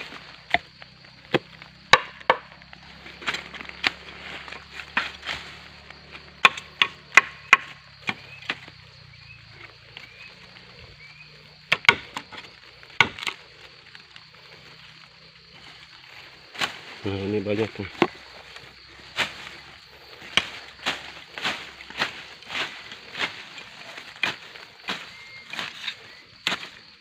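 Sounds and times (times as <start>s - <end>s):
blade chopping bamboo: 0.5s - 8.7s, 11.4s - 13.4s, 20.2s - 26.8s.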